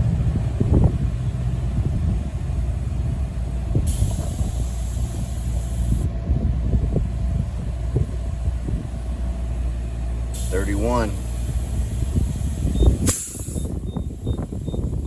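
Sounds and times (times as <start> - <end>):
air compressor running: 3.2 - 15.0
high air hiss: 3.8 - 6.1, 10.3 - 13.8.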